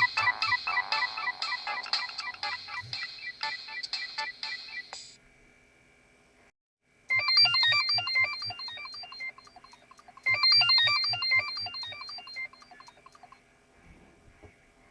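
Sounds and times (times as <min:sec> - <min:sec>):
mobile phone ringtone melody: 0:00.0 - 0:05.0, 0:07.1 - 0:13.4.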